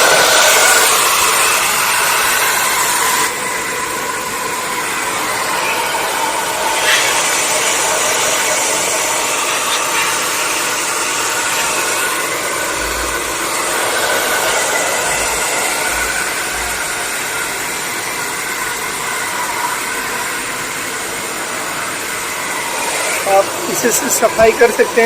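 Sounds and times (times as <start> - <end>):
electric air blower rushing: 0.0 - 25.0.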